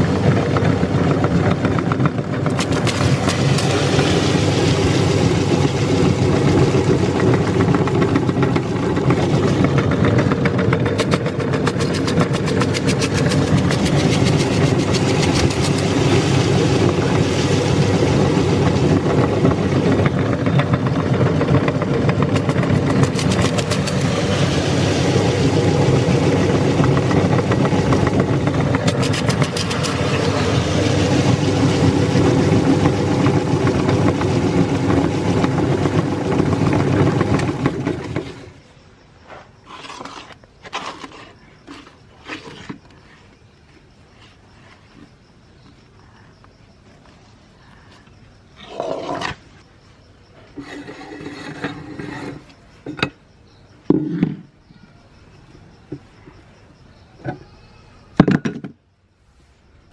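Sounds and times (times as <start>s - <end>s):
electric meat grinder motor humming: 0.0s - 38.4s
candy crunching in grinder: 0.0s - 38.6s.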